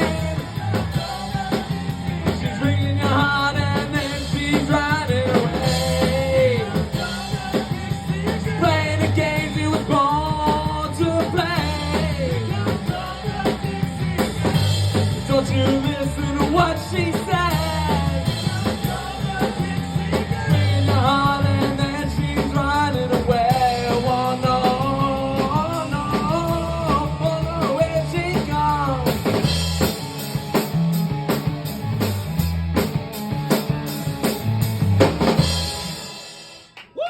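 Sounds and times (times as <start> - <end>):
steady bass: 0.0 - 36.2
drum kit hits: 11.4 - 36.8
bending lead guitar melody: 28.8 - 36.2.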